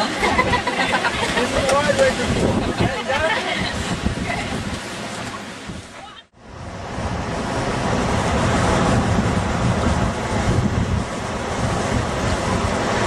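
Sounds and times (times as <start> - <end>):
rushing river water: 0.0 - 13.0
wind buffeting microphone: 0.0 - 13.0.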